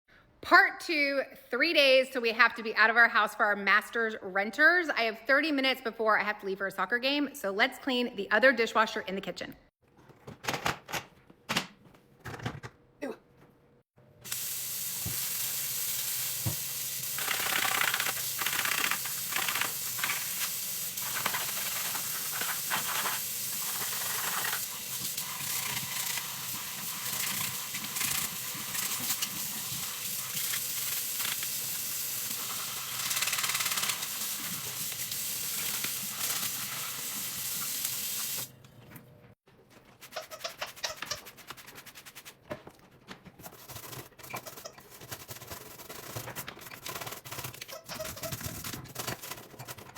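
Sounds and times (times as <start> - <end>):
water spray hissing: 14.3 - 38.5.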